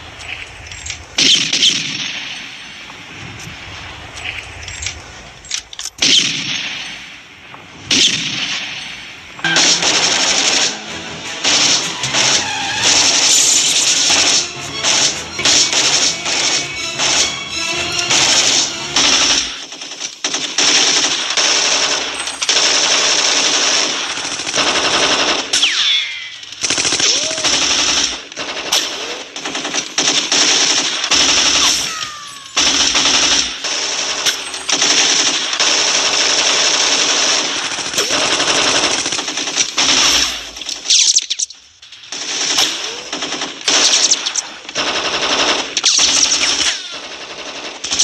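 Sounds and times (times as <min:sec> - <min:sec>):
automatic gunfire: 0:07.9 - 0:12.4, 0:13.3 - 0:31.8, 0:32.6 - 0:41.2, 0:42.0 - 0:48.0.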